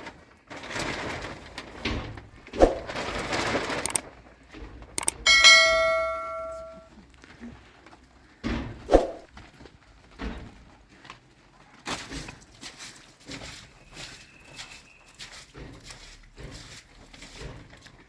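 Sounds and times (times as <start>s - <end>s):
rustling handling noise: 0.0s - 18.0s
knocks: 5.0s - 6.8s
metal cookware ringing: 5.3s - 6.9s.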